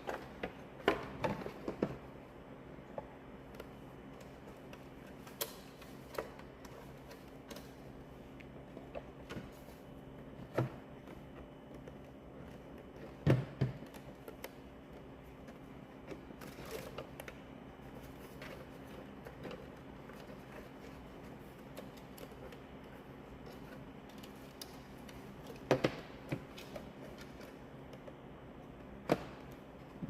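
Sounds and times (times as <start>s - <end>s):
plastic parts knocking and clicking: 0.0s - 2.1s, 10.3s - 28.2s.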